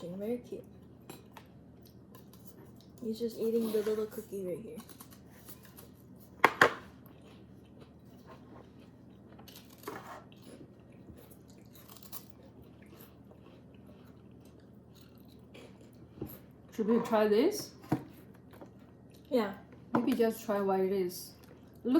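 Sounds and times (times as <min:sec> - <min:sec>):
wafer cookie crunching: 0:01.0 - 0:16.8.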